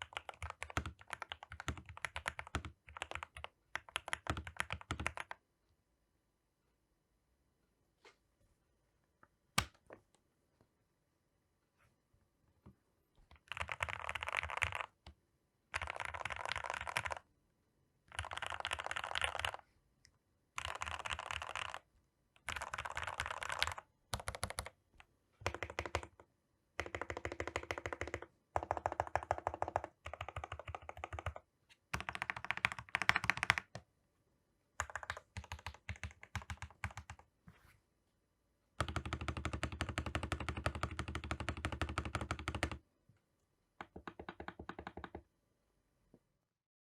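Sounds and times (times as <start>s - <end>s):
mechanical keyboard typing: 0.0s - 5.4s, 13.3s - 15.1s, 15.7s - 17.2s, 18.1s - 19.6s, 20.6s - 24.8s, 25.4s - 26.2s, 26.8s - 33.8s, 34.8s - 37.2s, 38.8s - 42.8s, 43.8s - 45.2s.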